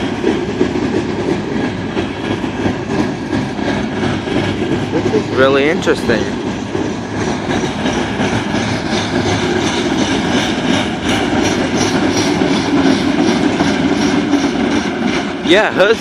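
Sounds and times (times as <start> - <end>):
freight train rolling past: 0.0 - 16.0
steel wheels on rails: 0.0 - 16.0.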